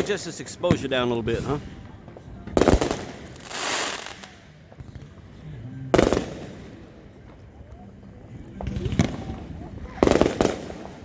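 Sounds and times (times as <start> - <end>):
firework bangs: 0.0 - 7.4, 8.6 - 11.0
firework crackling hiss: 2.6 - 4.5.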